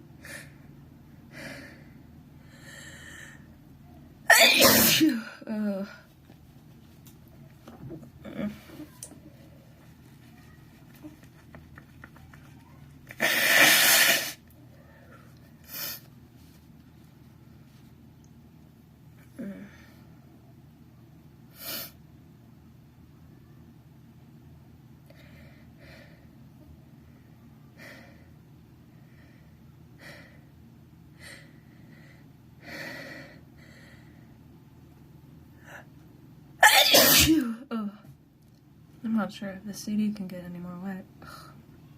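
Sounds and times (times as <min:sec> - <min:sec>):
person sneezing: 0:04.3 - 0:05.3, 0:13.1 - 0:14.4, 0:36.6 - 0:37.6.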